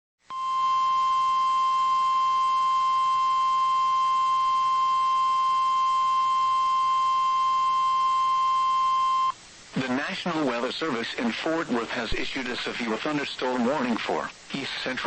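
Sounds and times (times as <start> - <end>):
loud steady alarm tone: 0.3 - 9.3
faint radio hiss: 3.6 - 15.0.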